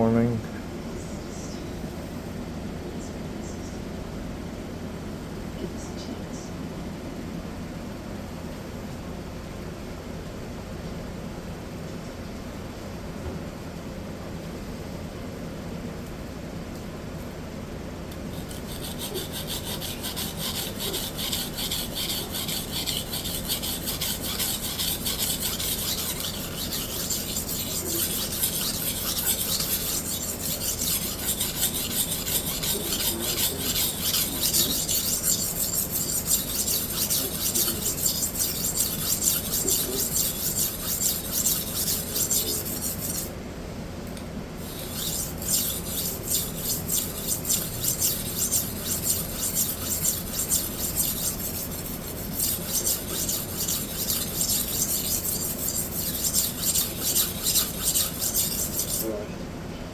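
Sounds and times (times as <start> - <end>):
knife scraping on sharpening stone: 18.3 - 43.3, 44.6 - 59.1.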